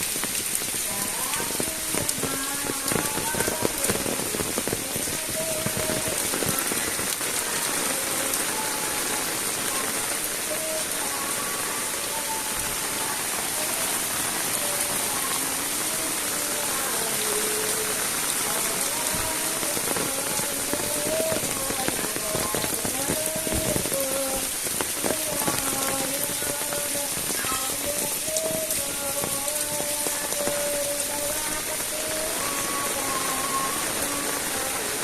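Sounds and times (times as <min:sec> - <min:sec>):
heavy rain: 0:00.0 - 0:35.0.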